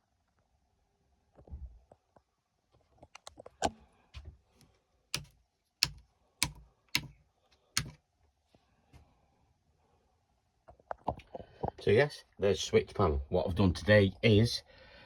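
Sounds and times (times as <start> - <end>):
switches clicking: 5.2 - 7.2.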